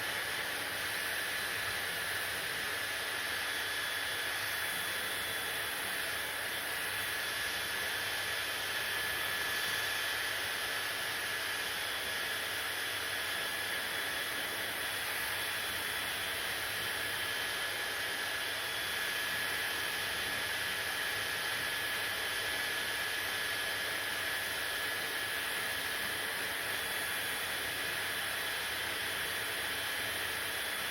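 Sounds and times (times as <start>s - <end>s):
hair dryer running: 0.0s - 30.9s.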